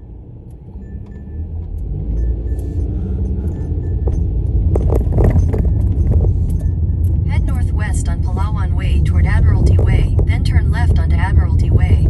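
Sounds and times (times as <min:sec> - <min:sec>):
car engine and road noise: 0:00.0 - 0:12.0
clicks and jingles: 0:00.8 - 0:07.3.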